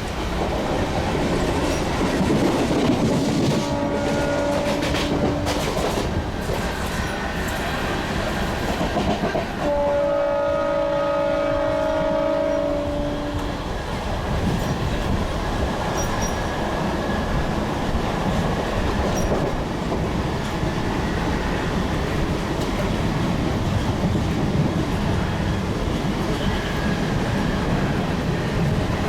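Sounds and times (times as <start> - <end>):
train rumbling on rails: 0.0 - 29.0
train horn: 3.4 - 6.0, 9.6 - 13.6.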